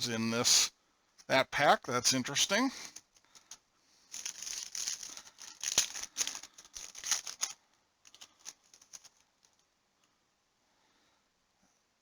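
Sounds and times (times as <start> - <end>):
cellophane wrapper crinkling: 2.8 - 9.6
cards clicking and tapping: 4.2 - 9.2.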